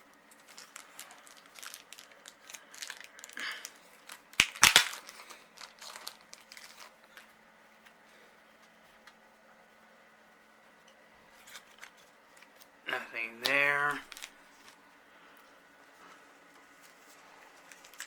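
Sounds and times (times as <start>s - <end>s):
plastic packaging crinkling: 0.1s - 7.3s, 11.3s - 12.7s, 13.8s - 14.8s, 16.8s - 18.0s.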